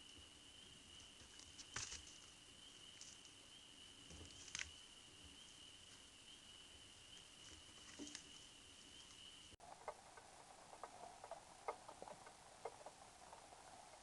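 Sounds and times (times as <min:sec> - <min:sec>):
light ticks and patter: 0:07.1 - 0:14.0.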